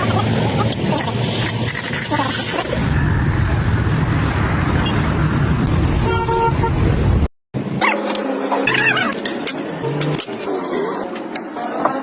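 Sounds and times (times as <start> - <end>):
vehicle rough low rumble: 0.0 - 7.8.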